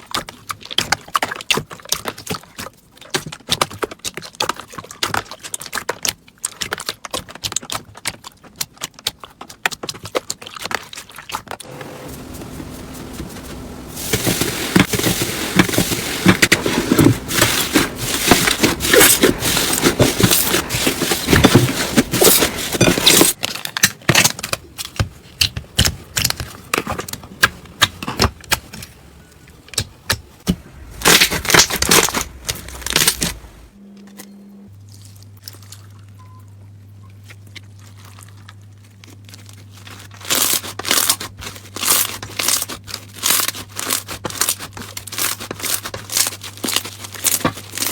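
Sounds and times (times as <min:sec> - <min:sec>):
steady low hum: 0:11.7 - 0:23.4, 0:25.1 - 0:35.2
slime crackling and popping: 0:30.6 - 0:33.6.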